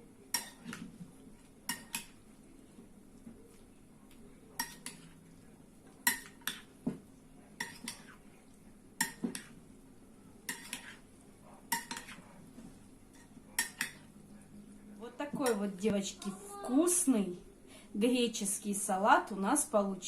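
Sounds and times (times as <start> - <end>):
cutlery clinking on plate: 4.6 - 5.1, 7.6 - 8.1, 9.0 - 9.5, 11.7 - 12.2, 13.2 - 14.0.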